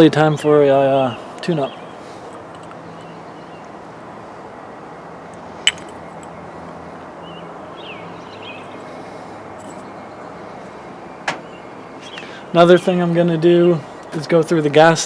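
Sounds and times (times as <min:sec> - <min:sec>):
steady background noise: 0:00.0 - 0:15.0
sharp click: 0:05.7 - 0:06.0.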